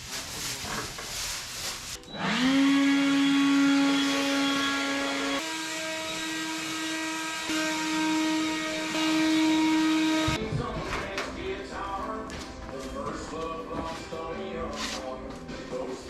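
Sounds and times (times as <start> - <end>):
power tool motor whining: 2.0 - 10.4.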